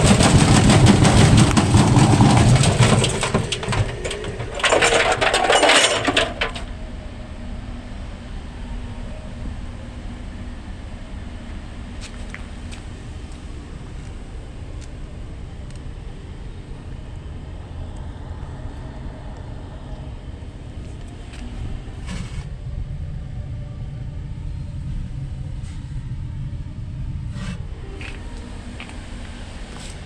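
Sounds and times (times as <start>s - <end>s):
washing machine rumbling: 0.0s - 7.1s.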